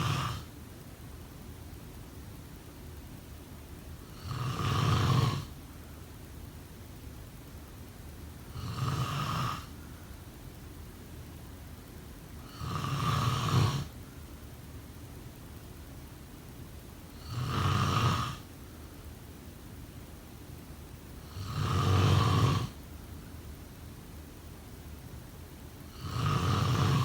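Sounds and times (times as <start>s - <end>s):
person snoring: 0.0s - 0.5s, 4.1s - 5.5s, 8.5s - 9.7s, 12.4s - 13.9s, 17.2s - 18.4s, 21.3s - 22.8s, 25.9s - 27.0s
steady background noise: 0.0s - 27.0s.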